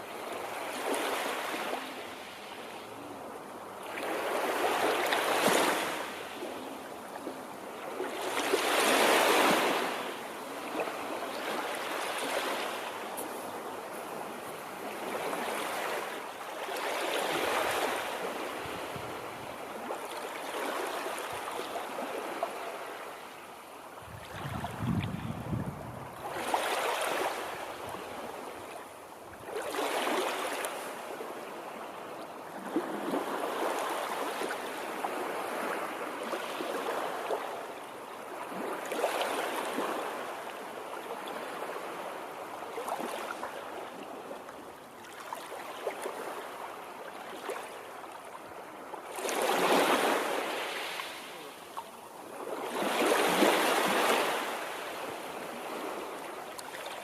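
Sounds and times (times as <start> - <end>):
water washing in waves: 24.0 - 28.8, 52.3 - 57.0.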